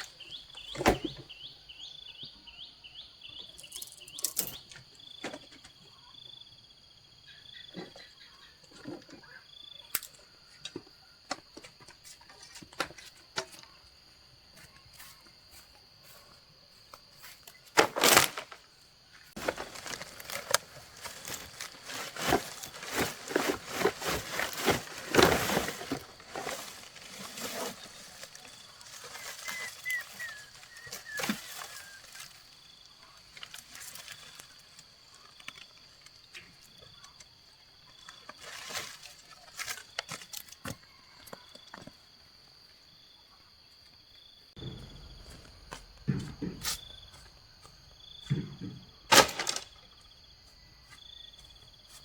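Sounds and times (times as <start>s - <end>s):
bird chirping: 0.0s - 5.2s, 28.0s - 33.2s.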